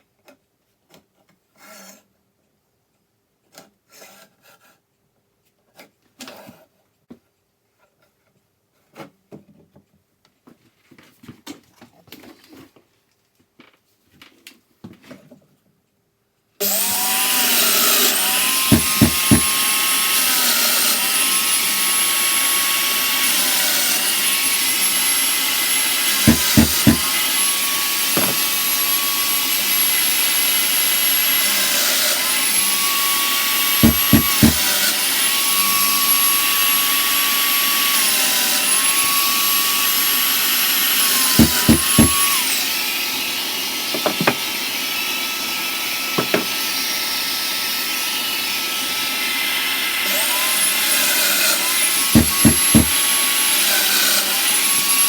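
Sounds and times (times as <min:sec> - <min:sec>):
woodworking machine running: 0:16.6 - 0:20.2, 0:24.6 - 0:29.2, 0:31.7 - 0:35.1, 0:41.2 - 0:42.6, 0:50.0 - 0:55.0
handling of wood: 0:18.6 - 0:19.6, 0:26.3 - 0:27.2, 0:28.2 - 0:28.5, 0:33.8 - 0:34.8, 0:41.4 - 0:42.4, 0:44.0 - 0:44.5, 0:46.2 - 0:46.6, 0:52.2 - 0:53.0
thumps: 0:18.6 - 0:19.6, 0:26.2 - 0:27.2, 0:28.2 - 0:28.5, 0:33.8 - 0:34.8, 0:41.4 - 0:42.4, 0:44.0 - 0:44.4, 0:46.2 - 0:46.6, 0:52.2 - 0:53.0.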